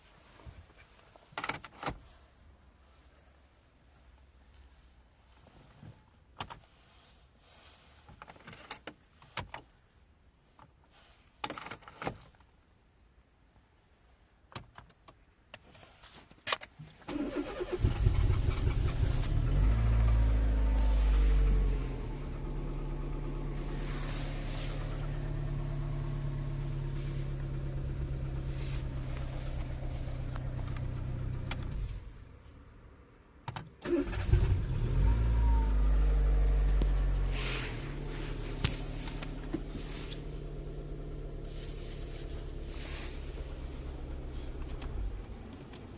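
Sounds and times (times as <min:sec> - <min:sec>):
engine cranking and starting: 0:17.1 - 0:32.1, 0:33.8 - 0:45.9
car engine idling: 0:17.1 - 0:32.6, 0:33.9 - 0:45.9.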